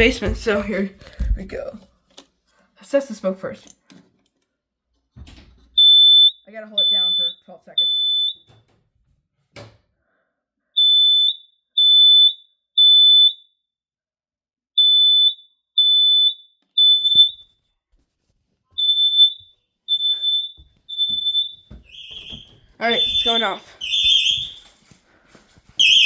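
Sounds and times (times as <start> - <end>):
smoke detector beeping: 5.8 - 8.5, 14.8 - 17.4, 18.8 - 24.7, 25.8 - 26.0.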